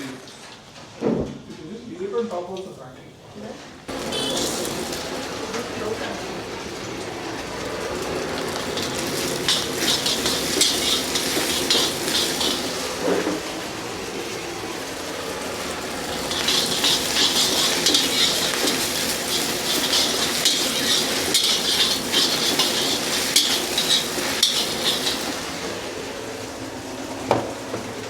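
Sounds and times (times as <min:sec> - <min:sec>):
food sizzling in a wok: 0:03.9 - 0:28.0
metal ladle scraping a wok: 0:04.0 - 0:04.9, 0:08.4 - 0:13.4, 0:16.1 - 0:25.6.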